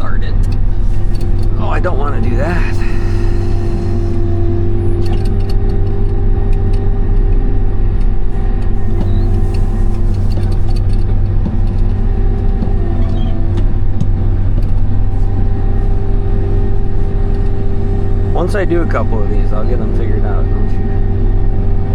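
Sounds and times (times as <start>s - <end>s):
combine engine drone: 0.0s - 21.9s.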